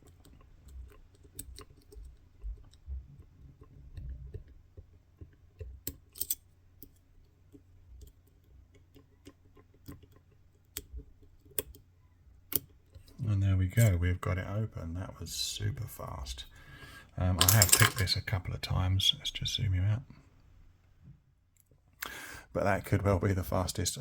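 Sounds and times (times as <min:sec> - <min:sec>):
lock pick clicking and scraping: 0:05.8 - 0:07.0.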